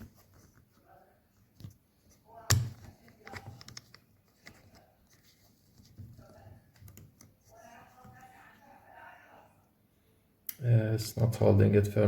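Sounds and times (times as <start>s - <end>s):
plastic parts clicking and knocking: 2.5s - 7.4s.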